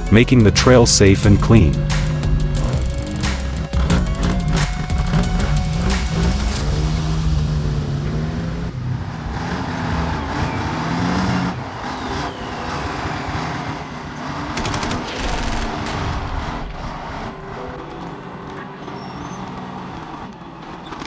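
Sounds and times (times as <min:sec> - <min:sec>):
rough machine noise: 0:00.0 - 0:20.3
heavy vehicle engine running: 0:00.0 - 0:21.0
sharp machine bursts: 0:11.8 - 0:17.7.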